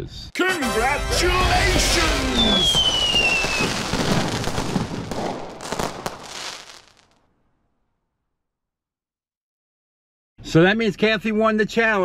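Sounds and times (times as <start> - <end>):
fireworks crackling and popping: 0.4 - 7.3
firework whistle falling in pitch: 0.7 - 4.4.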